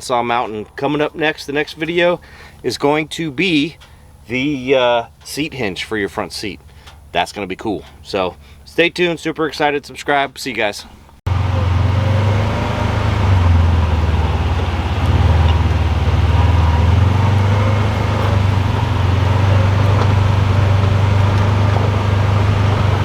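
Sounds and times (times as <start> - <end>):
vehicle engine low drone: 11.3 - 23.0.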